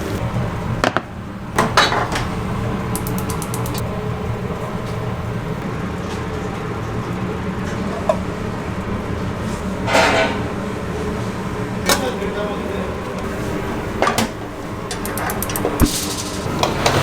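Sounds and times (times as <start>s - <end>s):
low machine hum: 0.0s - 17.0s
kitchenware clattering: 1.6s - 2.4s, 9.8s - 10.6s, 14.0s - 17.0s
light clicks: 3.0s - 3.8s.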